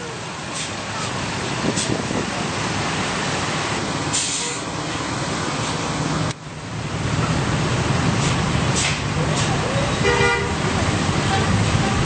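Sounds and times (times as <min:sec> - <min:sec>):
bus engine and road noise: 0:00.0 - 0:12.0
air hiss: 0:04.1 - 0:04.7.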